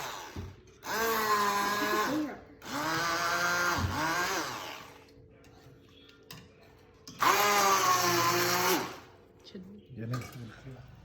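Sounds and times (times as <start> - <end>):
electric blender grinding: 0.0 - 5.0, 7.2 - 9.2.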